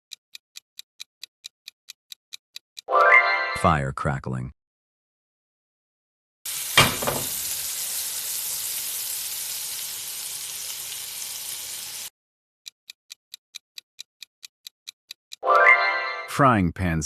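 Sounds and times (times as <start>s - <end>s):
food sizzling in a frying pan: 6.5s - 12.1s.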